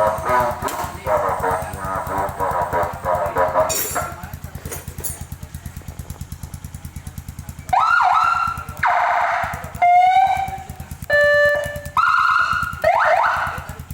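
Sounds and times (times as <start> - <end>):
motorcycle engine idling: 0.0 - 13.9
siren tones: 7.7 - 13.7.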